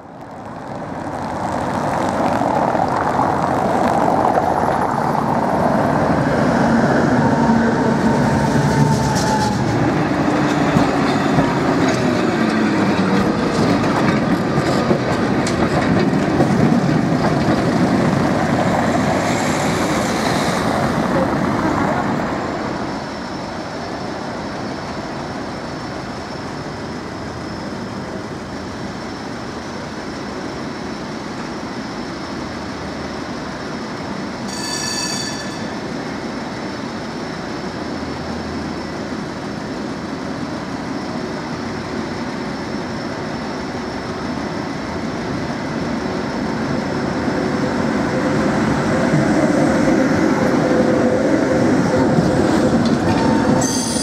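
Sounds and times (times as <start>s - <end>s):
tram wheels rumbling on rails: 0.0s - 54.0s
short high ringing tone: 34.5s - 36.0s, 53.1s - 54.0s.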